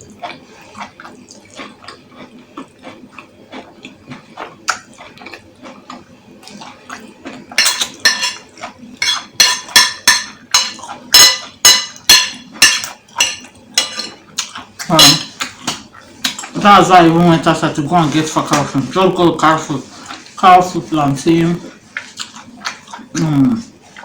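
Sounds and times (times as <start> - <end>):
cutlery clinking against a dish: 7.6 - 16.6.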